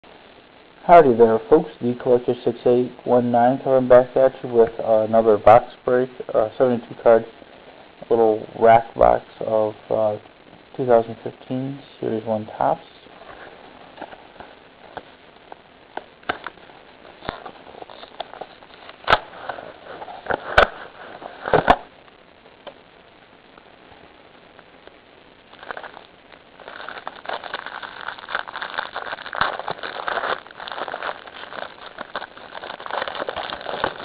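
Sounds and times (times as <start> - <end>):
packaging crinkling: 13.2 - 21.9, 25.5 - 34.0.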